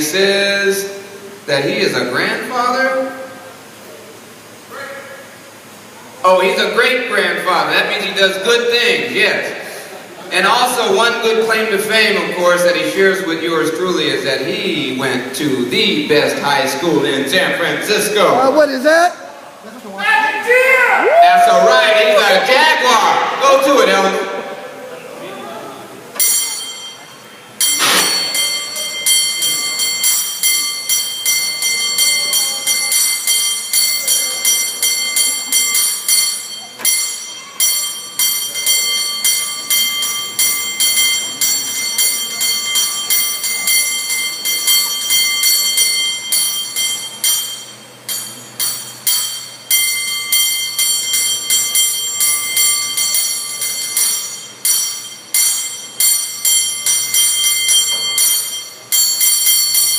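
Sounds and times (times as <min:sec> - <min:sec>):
cable car bell ringing: 0:26.2 - 0:59.9.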